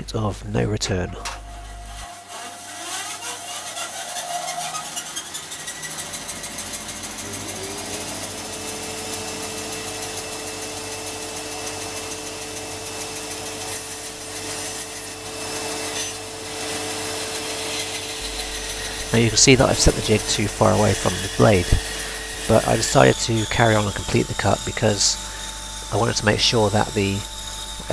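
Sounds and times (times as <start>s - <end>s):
steady hum: 0.0s - 5.7s, 17.3s - 27.9s
bandsaw cutting wood: 0.9s - 27.9s.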